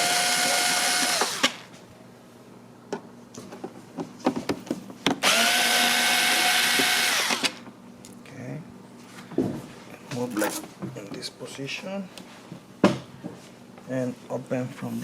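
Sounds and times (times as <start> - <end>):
electric drill-driver whining: 0.0 - 1.7, 5.2 - 7.6.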